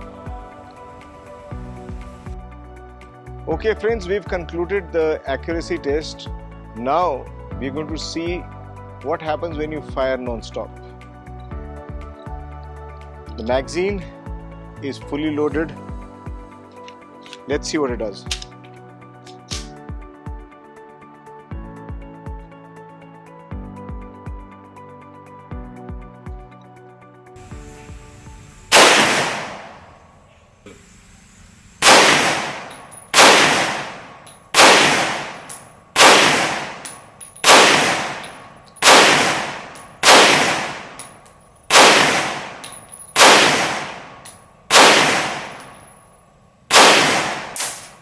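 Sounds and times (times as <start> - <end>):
pistol shots with echo: 28.7 - 30.0, 31.8 - 45.9, 46.7 - 48.0.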